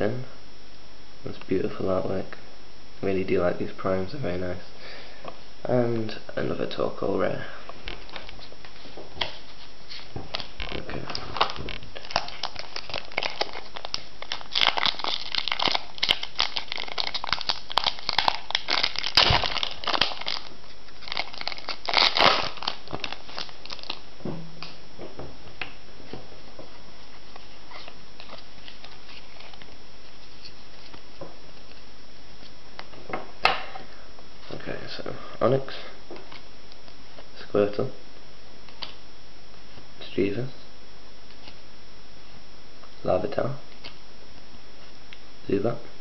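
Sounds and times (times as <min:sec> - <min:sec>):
steady hiss: 0:00.0 - 0:46.0
foil wrapper crinkling and tearing: 0:07.8 - 0:24.1, 0:27.3 - 0:31.1.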